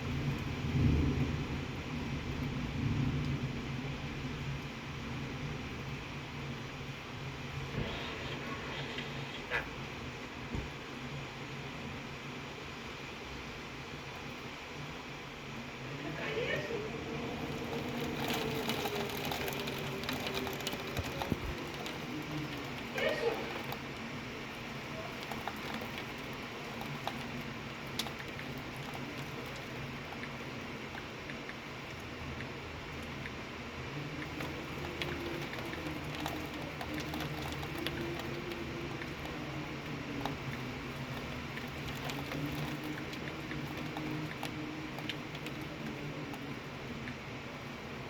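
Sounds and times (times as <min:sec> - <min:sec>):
steady rain falling: 0:00.0 - 0:48.0
loud ticks: 0:34.1 - 0:47.2.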